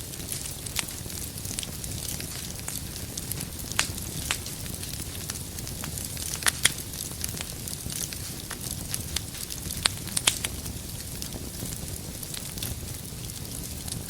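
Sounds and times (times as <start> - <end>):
firewood crackling and popping: 0.0 - 14.0
wood fire rumbling and hissing: 0.0 - 14.0.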